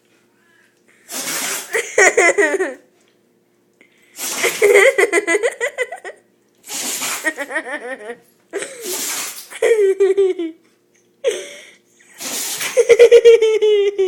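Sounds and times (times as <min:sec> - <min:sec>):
dog sneezing: 0:01.1 - 0:01.8, 0:04.2 - 0:04.9, 0:06.6 - 0:07.5, 0:08.8 - 0:09.6, 0:12.1 - 0:12.8
person laughing: 0:01.7 - 0:02.9, 0:04.4 - 0:06.2, 0:07.2 - 0:08.9, 0:09.5 - 0:11.7, 0:12.6 - 0:14.0.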